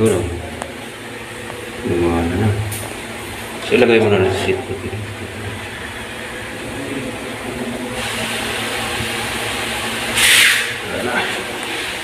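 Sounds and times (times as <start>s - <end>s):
sharp loud hiss: 10.1s - 10.8s.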